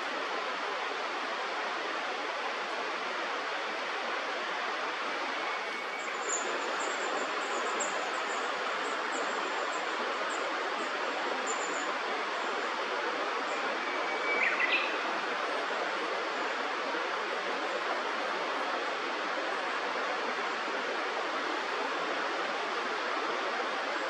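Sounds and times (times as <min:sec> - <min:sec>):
river water rushing: 0:00.0 - 0:24.0.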